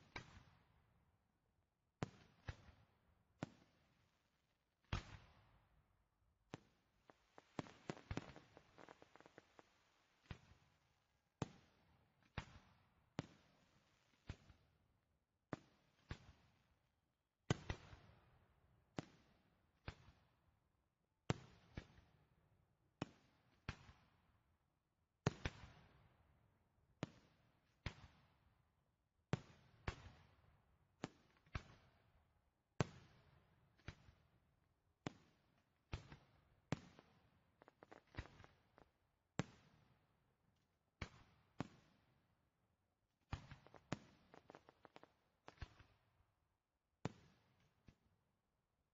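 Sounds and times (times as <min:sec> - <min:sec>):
fireworks bursting: 0:06.5 - 0:10.6, 0:43.4 - 0:45.8.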